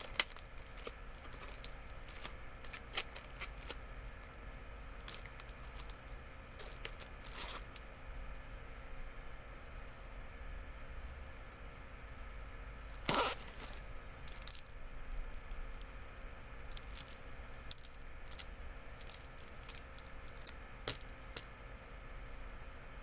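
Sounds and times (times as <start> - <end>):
small clicks and crinkles: 0.0 - 4.4, 5.0 - 7.8, 13.0 - 15.9, 16.7 - 21.5
loud rustle: 13.0 - 13.8.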